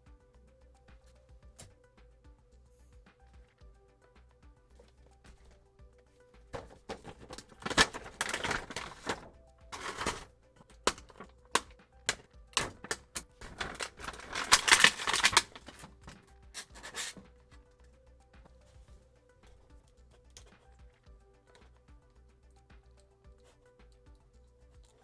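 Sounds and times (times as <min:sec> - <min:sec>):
soft background music: 0:00.0 - 0:25.0
plastic and cardboard crinkling: 0:06.6 - 0:17.2
plastic clicks and snaps: 0:06.6 - 0:17.2.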